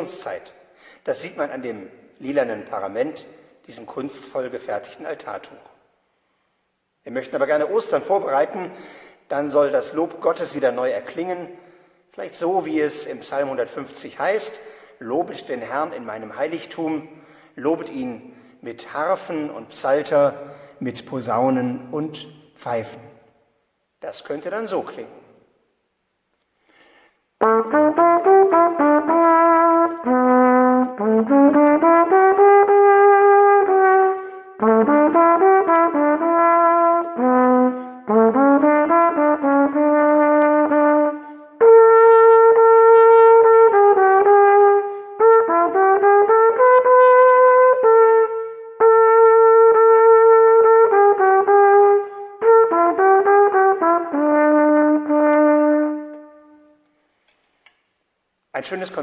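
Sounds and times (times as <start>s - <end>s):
solo brass instrument melody: 27.4s - 56.8s.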